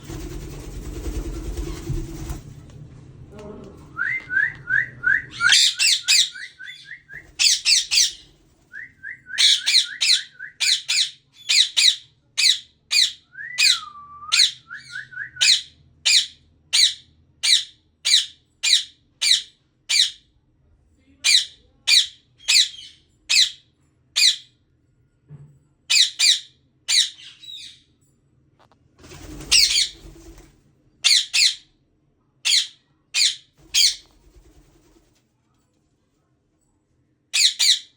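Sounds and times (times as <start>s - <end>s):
parrot squawking: 5.4s - 6.5s, 7.4s - 8.2s, 32.5s - 34.0s, 37.4s - 37.9s.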